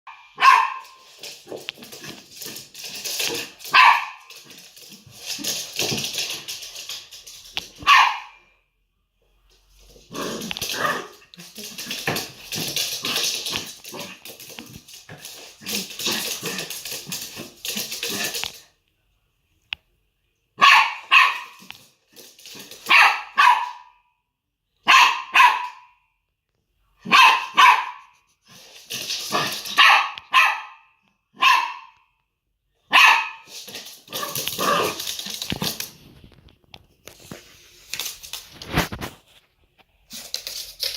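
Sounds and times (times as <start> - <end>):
small dog barking: 0.1 - 1.0, 3.7 - 4.3, 7.8 - 8.4, 20.6 - 21.6, 22.9 - 24.0, 24.8 - 26.0, 27.0 - 28.1, 29.3 - 32.0, 32.9 - 33.5
rustling noise: 0.4 - 8.3, 9.3 - 18.7, 33.4 - 40.9.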